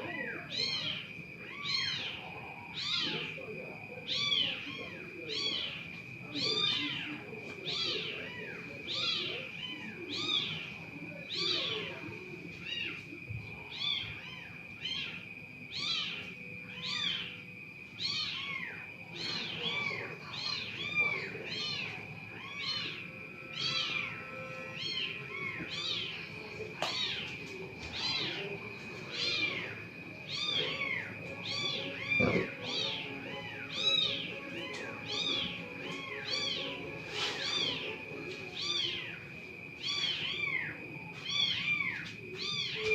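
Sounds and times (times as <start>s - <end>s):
small animal chirping: 30.3s - 33.0s.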